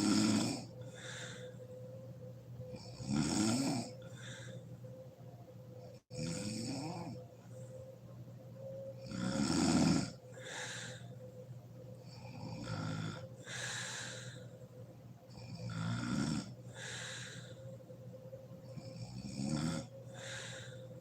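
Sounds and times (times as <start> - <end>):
woman snoring heavily: 0.0 - 1.6, 2.7 - 4.6, 6.1 - 7.3, 9.0 - 11.1, 12.0 - 14.5, 15.3 - 17.7, 18.7 - 21.0
soft breaths: 0.0 - 3.0, 3.9 - 6.1, 7.0 - 9.0, 10.1 - 15.7, 16.4 - 19.2, 19.8 - 21.0.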